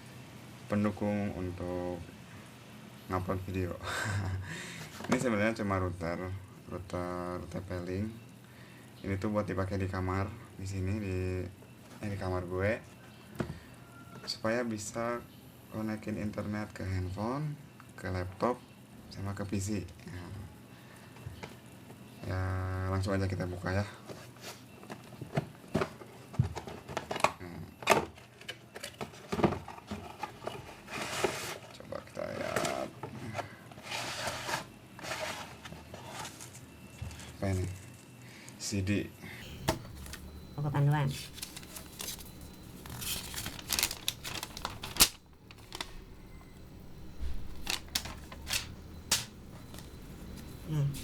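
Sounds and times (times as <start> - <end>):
paper and cardboard rustling: 39.4 - 51.0.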